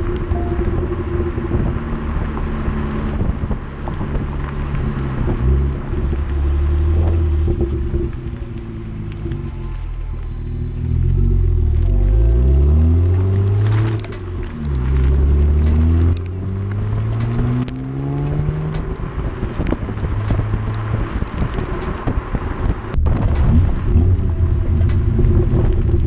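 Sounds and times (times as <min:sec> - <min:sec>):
car engine accelerating: 0:00.0 - 0:26.0.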